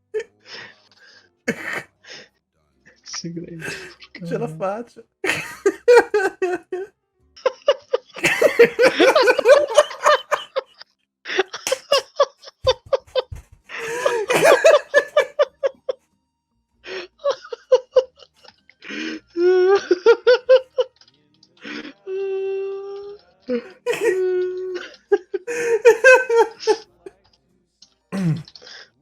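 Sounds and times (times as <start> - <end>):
men laughing: 3.6 - 16.0, 16.9 - 18.5, 19.4 - 20.9, 23.8 - 26.9.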